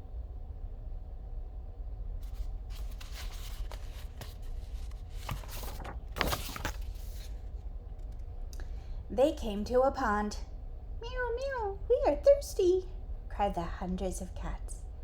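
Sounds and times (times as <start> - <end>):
steady low hum: 0.0 - 15.0
book pages rustling: 2.2 - 8.2.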